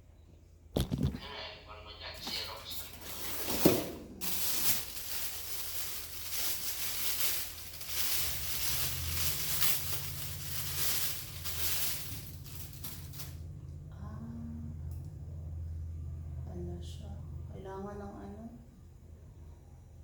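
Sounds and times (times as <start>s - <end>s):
low steady hum: 0.0s - 20.0s
rustling handling noise: 0.8s - 1.2s, 2.2s - 13.4s.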